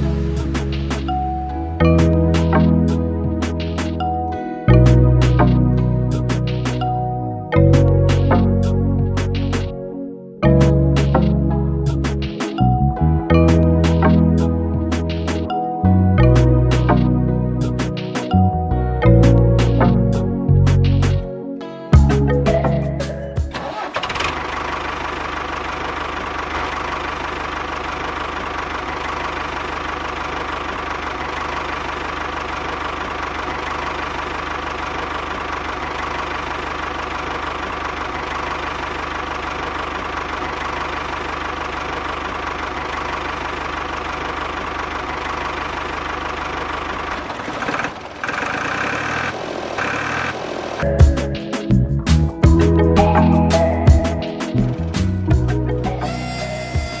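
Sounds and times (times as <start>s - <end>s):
small engine idling with knocking: 23.4s - 51.3s.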